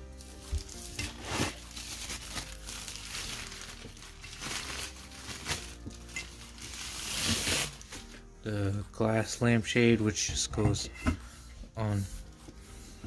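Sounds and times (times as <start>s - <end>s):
packaging crinkling: 0.2s - 8.0s.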